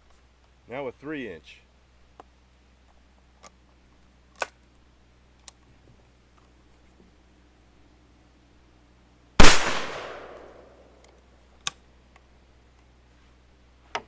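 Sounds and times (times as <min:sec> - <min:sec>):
shotgun shot: 0:09.4 - 0:10.7.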